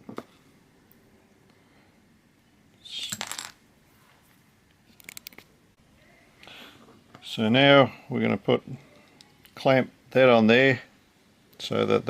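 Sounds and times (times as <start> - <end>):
small parts clicking and clinking: 4.9 - 5.5.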